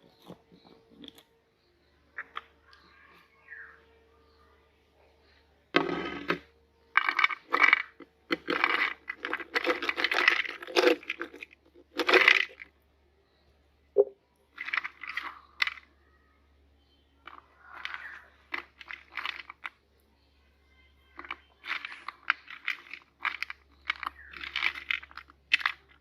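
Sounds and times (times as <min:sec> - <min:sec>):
cookies clattering in metal grinder: 0:07.0 - 0:12.6.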